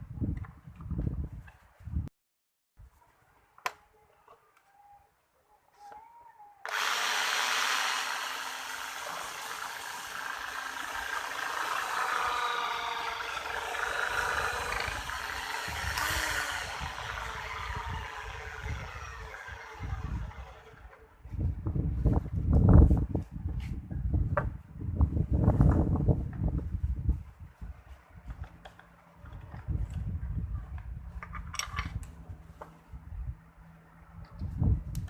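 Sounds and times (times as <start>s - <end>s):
power tool running: 6.7s - 21.0s.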